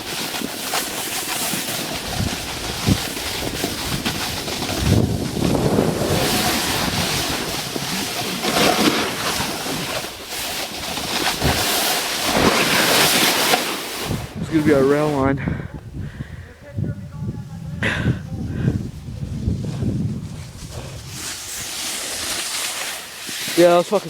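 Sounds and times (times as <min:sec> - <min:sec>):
wind buffeting microphone: 0:01.9 - 0:08.4, 0:14.0 - 0:21.7.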